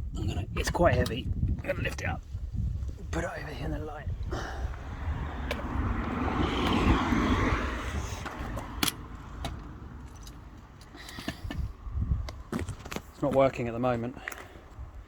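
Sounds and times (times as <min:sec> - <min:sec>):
car passing: 0:04.2 - 0:11.0.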